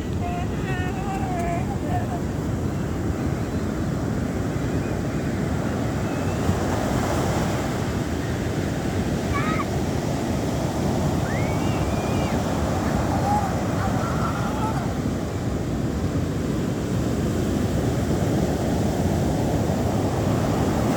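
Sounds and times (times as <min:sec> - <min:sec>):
ocean surf breaking: 0:00.0 - 0:20.9
wind on microphone: 0:00.0 - 0:20.9.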